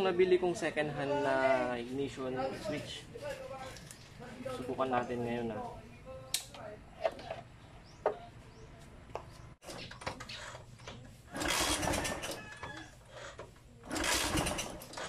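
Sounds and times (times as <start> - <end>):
electric starter cranking engine: 11.3 - 15.0.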